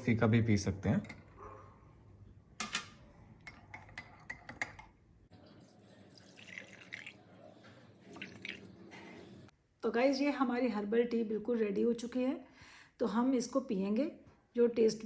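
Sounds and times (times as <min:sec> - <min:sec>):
small liquid sounds: 0:05.3 - 0:07.4, 0:08.0 - 0:08.8.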